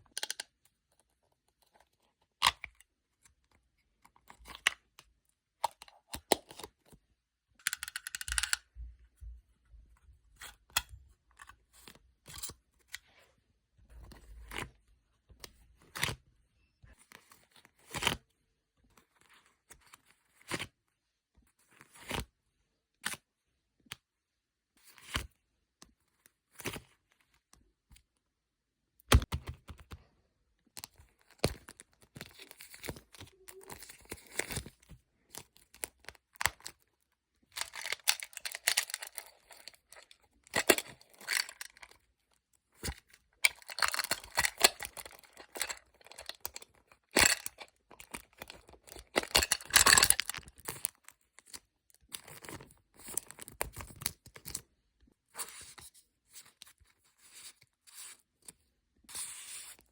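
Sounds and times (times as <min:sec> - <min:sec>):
plastic packaging crinkling: 0:37.6 - 0:42.0, 0:43.4 - 0:51.6.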